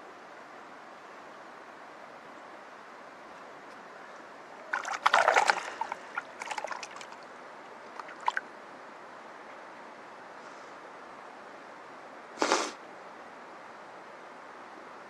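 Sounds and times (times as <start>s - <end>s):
water splashing: 4.5s - 8.5s
mountain stream rushing: 4.6s - 8.4s.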